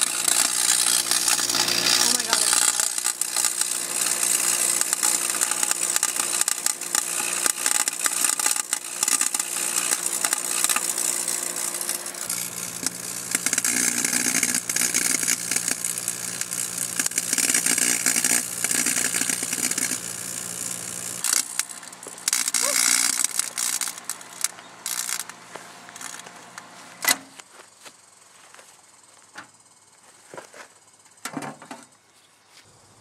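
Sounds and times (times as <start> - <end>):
dense crackling of burning: 0.0 - 26.3
microwave oven hum: 0.0 - 26.8
lower hum: 0.0 - 27.1.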